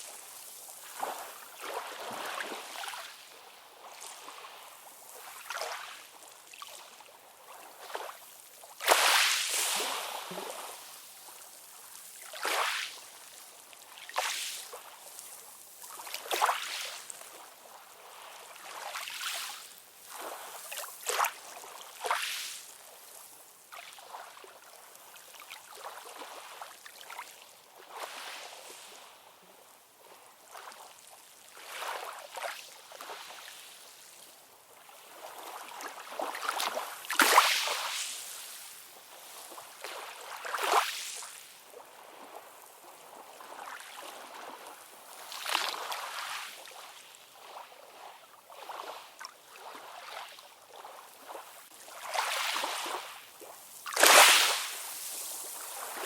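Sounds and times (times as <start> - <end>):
small ocean waves lapping: 0.0 - 56.0.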